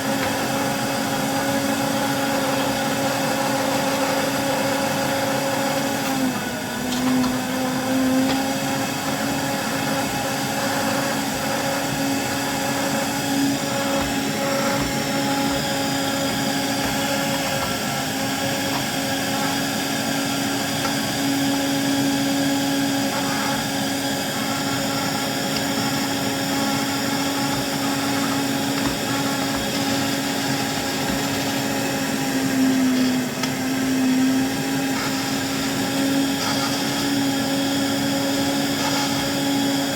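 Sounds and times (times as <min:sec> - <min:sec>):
small electric motor humming: 0:00.0 - 0:39.9.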